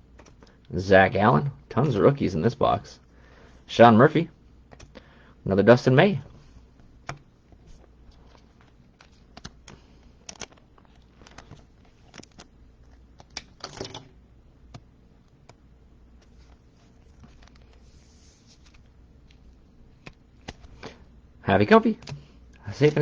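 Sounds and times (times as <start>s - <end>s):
card sleeves clicking and rustling: 6.4s - 14.0s, 16.2s - 21.0s, 21.9s - 23.0s.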